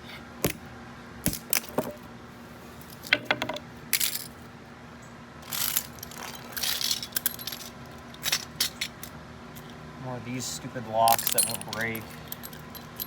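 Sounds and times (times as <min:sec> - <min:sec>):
small metal parts clattering: 0:02.8 - 0:04.4, 0:05.4 - 0:09.8, 0:11.0 - 0:13.0
metal parts being struck: 0:11.1 - 0:13.0.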